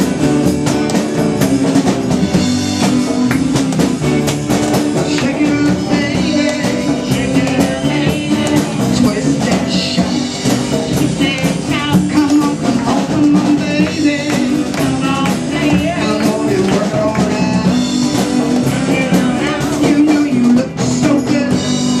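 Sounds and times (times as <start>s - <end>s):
drum kit beat: 0.0s - 22.0s
guitar: 0.0s - 22.0s
person singing: 2.9s - 22.0s.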